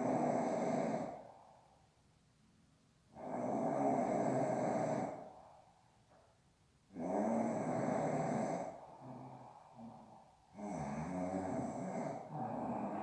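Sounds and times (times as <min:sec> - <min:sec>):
person snoring: 0:07.0 - 0:13.0.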